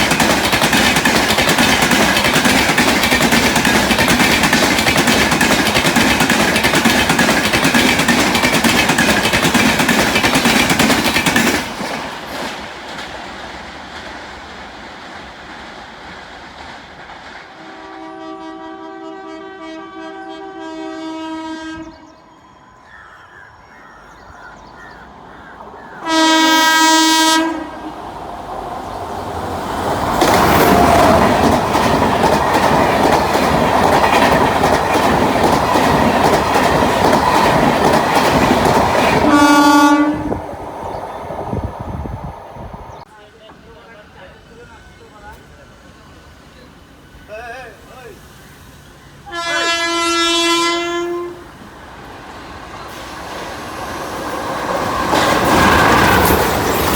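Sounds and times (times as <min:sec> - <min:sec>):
train wheels clattering on rails: 0:00.0 - 0:17.7, 0:28.8 - 0:41.8, 0:52.4 - 0:56.9
locomotive horn blast: 0:17.6 - 0:22.1, 0:26.0 - 0:28.0, 0:39.2 - 0:40.4, 0:49.3 - 0:51.6.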